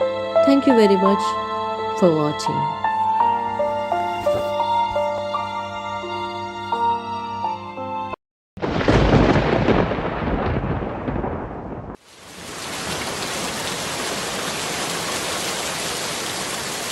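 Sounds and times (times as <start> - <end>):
music: 0.0 - 8.2
rumbling thunderclap: 8.6 - 14.3
heavy rain: 8.6 - 16.9.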